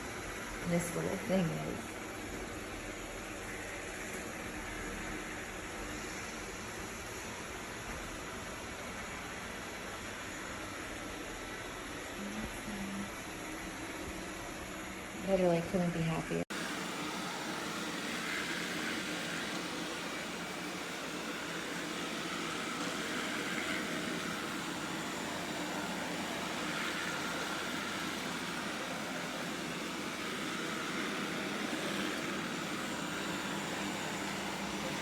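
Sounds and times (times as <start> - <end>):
robot vacuum whirring hum: 16.5 - 35.0.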